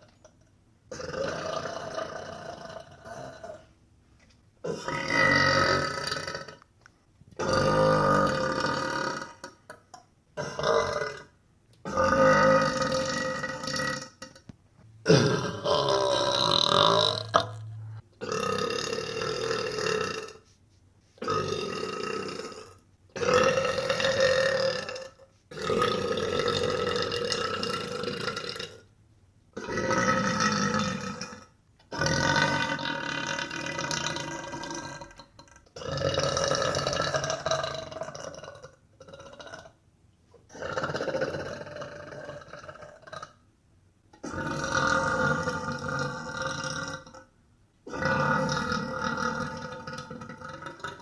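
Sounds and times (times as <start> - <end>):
woman burping: 15.0 - 20.4.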